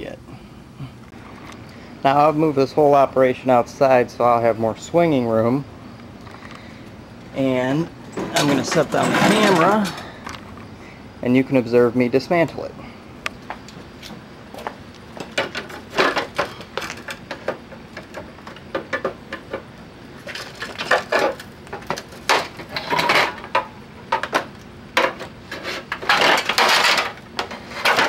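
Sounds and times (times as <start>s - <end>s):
sheet metal clanking and scraping: 7.6s - 10.4s, 15.2s - 28.0s.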